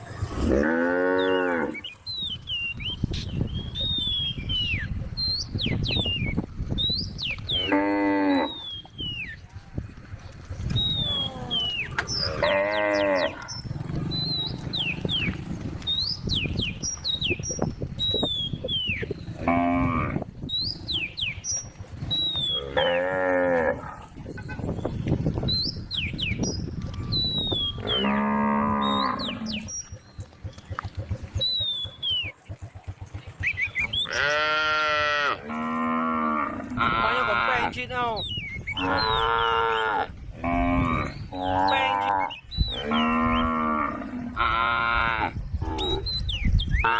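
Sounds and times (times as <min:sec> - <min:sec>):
cows mooing: 0:00.2 - 0:01.9, 0:07.5 - 0:08.8, 0:11.0 - 0:15.8, 0:19.3 - 0:20.3, 0:22.4 - 0:24.2, 0:27.6 - 0:29.9, 0:34.0 - 0:37.8, 0:38.7 - 0:46.1.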